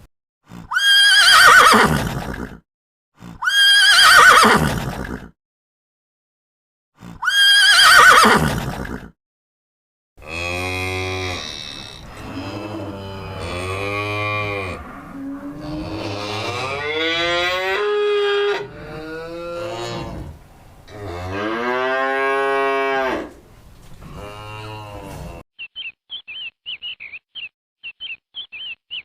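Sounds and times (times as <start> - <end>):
cow mooing: 10.2 - 23.4, 24.0 - 25.4.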